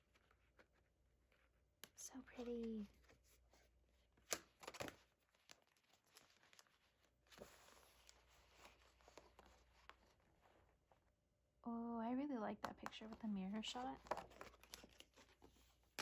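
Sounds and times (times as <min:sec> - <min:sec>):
paper rustling: 0:02.3 - 0:10.9, 0:13.0 - 0:16.0.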